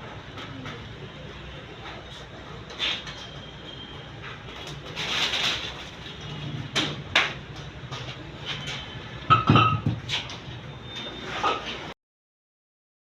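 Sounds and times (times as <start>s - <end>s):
sharp knocks and clatters: 4.5s - 10.5s.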